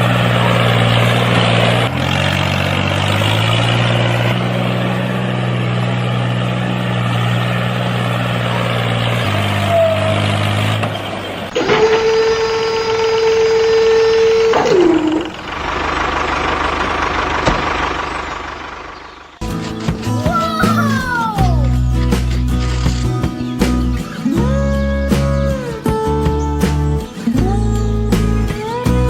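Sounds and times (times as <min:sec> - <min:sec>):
small engine running: 0:11.5 - 0:20.8.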